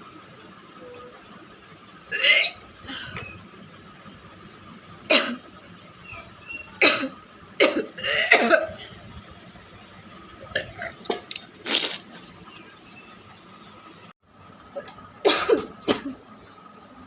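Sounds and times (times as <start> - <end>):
woman coughing and gagging: 6.8 - 8.8, 15.2 - 16.2.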